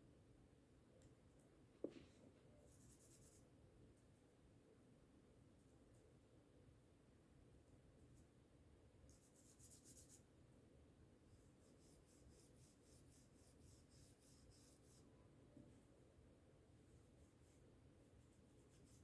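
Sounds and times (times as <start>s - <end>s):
small brush scrubbing: 11.4s - 15.1s, 16.8s - 19.0s.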